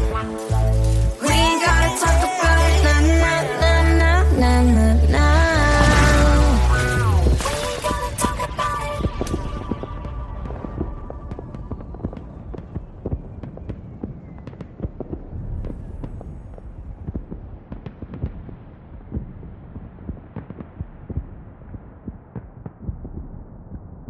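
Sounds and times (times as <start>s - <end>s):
crackling pops: 0.0s - 2.4s, 5.6s - 24.0s
dense low rumble: 2.6s - 7.5s.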